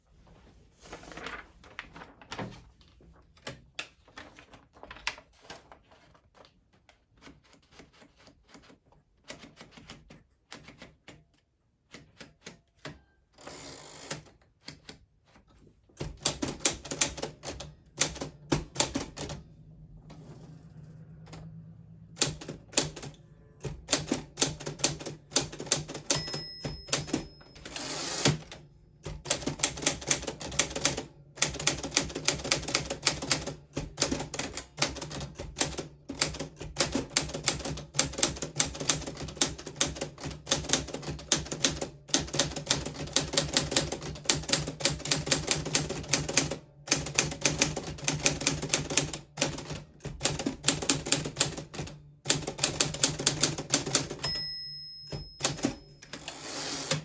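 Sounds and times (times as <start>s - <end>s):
manual typewriter keystrokes: 7.1s - 15.1s, 16.0s - 19.4s, 21.3s - 57.0s
longer typewriter sound: 16.0s - 19.4s, 21.5s - 57.0s.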